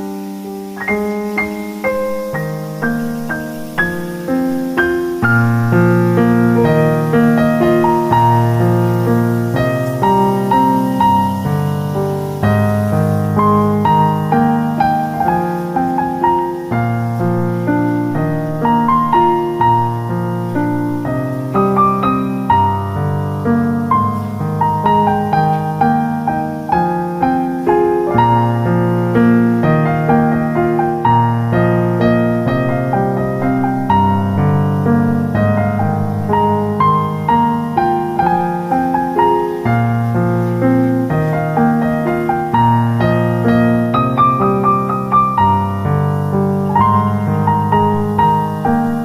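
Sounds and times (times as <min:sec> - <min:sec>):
piano music: 0:00.0 - 0:49.0.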